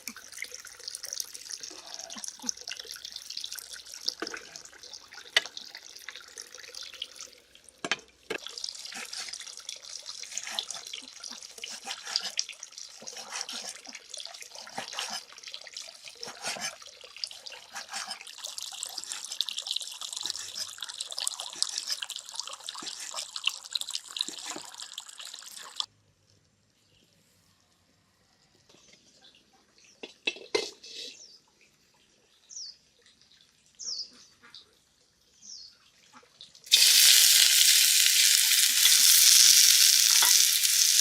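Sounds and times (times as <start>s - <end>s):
water running and splashing: 0.0s - 7.8s, 8.4s - 25.9s, 36.6s - 41.0s
small water drips: 0.0s - 27.2s, 31.4s - 41.0s.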